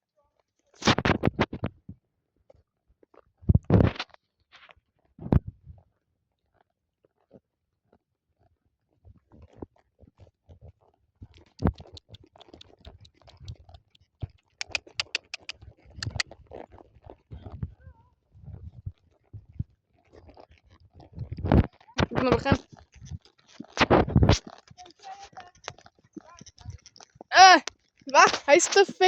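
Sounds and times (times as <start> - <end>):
crunching and clicking of chewing: 9.4 - 17.6, 20.0 - 28.1.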